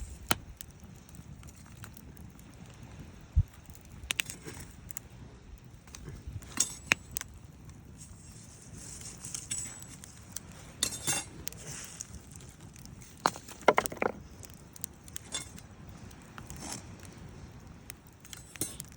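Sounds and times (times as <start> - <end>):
small hard objects clinking: 6.4 - 7.2, 8.9 - 14.4, 15.2 - 15.6, 18.3 - 18.8.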